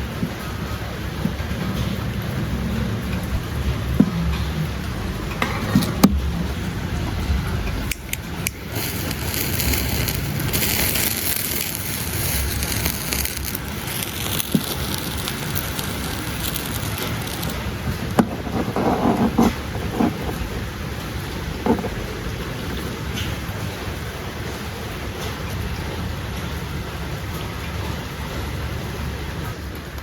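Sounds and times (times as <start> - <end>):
fire burning with rushing noise: 0.0 - 24.5
fire pops and crackles: 7.8 - 20.6.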